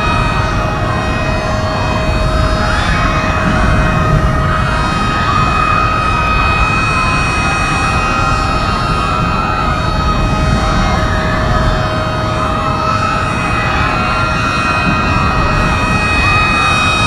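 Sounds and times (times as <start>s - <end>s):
low rumbling noise: 0.0s - 17.0s
warning siren steady tone: 0.0s - 17.0s.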